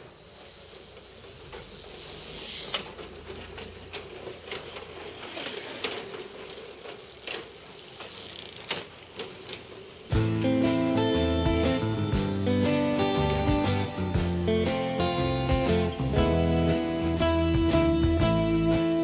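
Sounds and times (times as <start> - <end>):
whir of tiny electric motors: 0.0 - 10.1.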